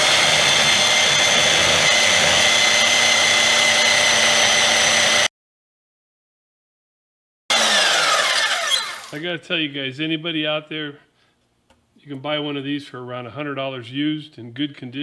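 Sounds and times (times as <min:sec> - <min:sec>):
band saw cutting metal: 0:00.0 - 0:05.3, 0:07.5 - 0:09.2.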